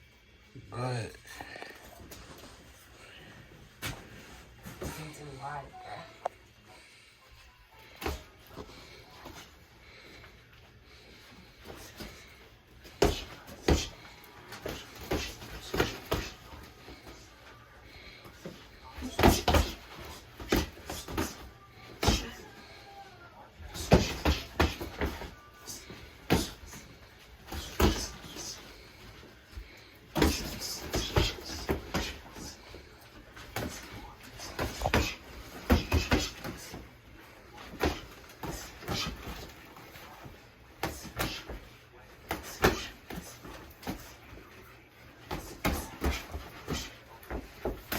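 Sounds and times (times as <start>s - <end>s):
boxing gloves thudding: 12.9s - 16.4s, 18.9s - 22.4s, 23.7s - 28.6s, 30.1s - 32.6s, 33.4s - 36.8s, 37.7s - 39.6s, 40.8s - 41.7s, 42.3s - 44.2s, 45.3s - 47.9s
gloved punches thudding: 19.0s - 21.4s, 22.0s - 22.4s, 23.8s - 26.8s, 27.5s - 28.6s, 30.1s - 32.6s, 33.5s - 36.7s
footwork thuds: 27.5s - 28.6s.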